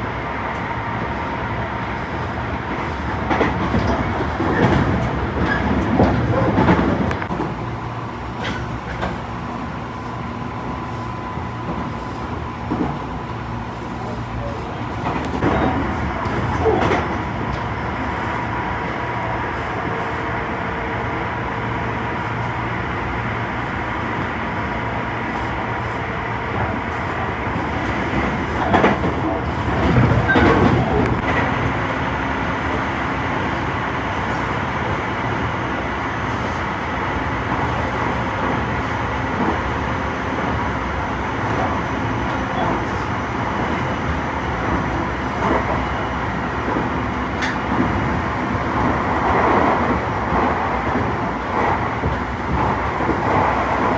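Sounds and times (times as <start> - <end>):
train wheels rumbling on rails: 0.0 - 53.9.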